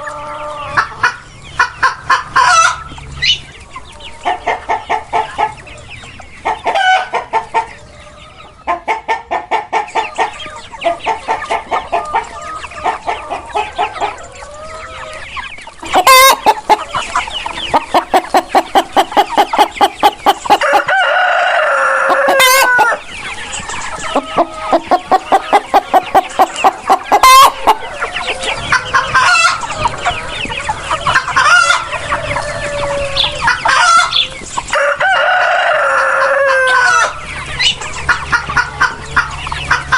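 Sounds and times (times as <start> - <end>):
chickens clucking: 0.0 - 39.9
rooster crowing: 20.5 - 29.6, 31.5 - 34.0, 34.8 - 37.2.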